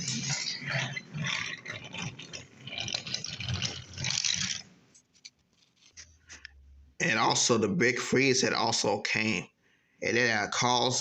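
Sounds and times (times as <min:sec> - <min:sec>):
toy trains clattering on wooden track: 0:02.6 - 0:04.6.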